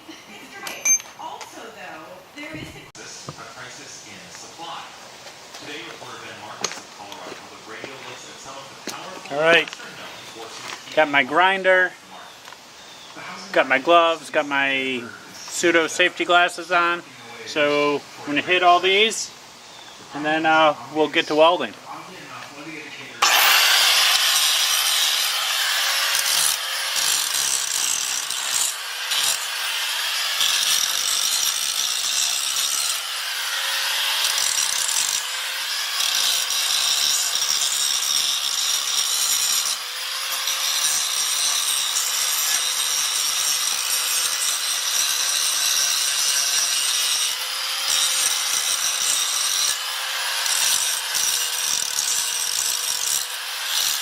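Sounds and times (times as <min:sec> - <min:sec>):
grinder grinding rust off metal: 0:23.2 - 0:54.0.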